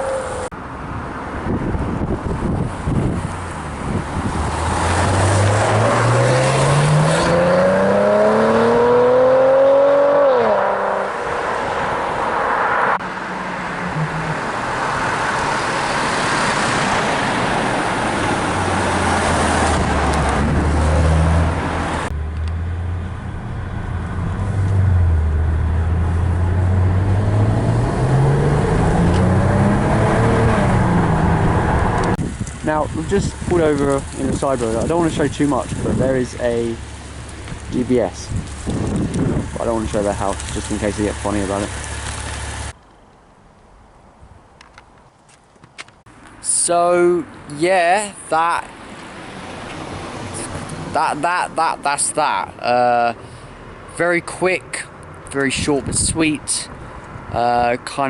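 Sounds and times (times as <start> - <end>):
car engine accelerating hard: 3.9 - 11.2, 18.4 - 32.3, 37.6 - 42.8.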